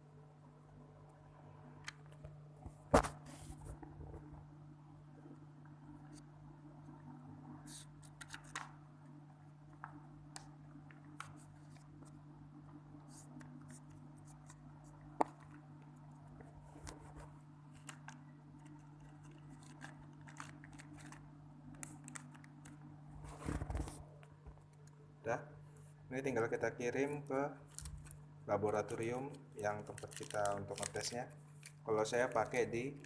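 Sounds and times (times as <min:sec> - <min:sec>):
steady low hum: 0:00.0 - 0:33.0
plastic bag crinkling: 0:18.7 - 0:22.7, 0:29.6 - 0:33.0.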